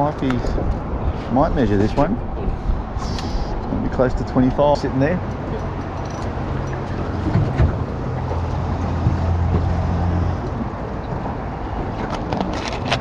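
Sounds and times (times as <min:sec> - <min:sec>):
engine humming: 0:05.2 - 0:13.0.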